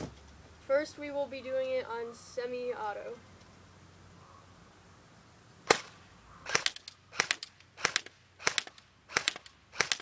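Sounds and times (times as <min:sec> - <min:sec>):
airsoft rifle shots: 0:05.6 - 0:10.0.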